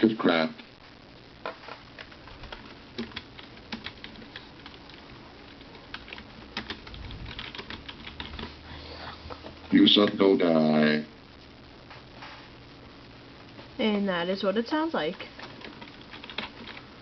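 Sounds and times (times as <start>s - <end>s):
faint keyboard typing: 2.0s - 8.6s, 15.1s - 17.0s.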